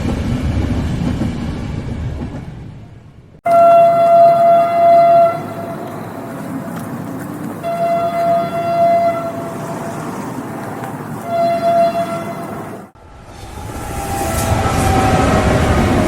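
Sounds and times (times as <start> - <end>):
passing train rumble: 0.0 - 16.0
train horn blasts: 3.4 - 5.9, 7.6 - 10.0, 11.2 - 12.5.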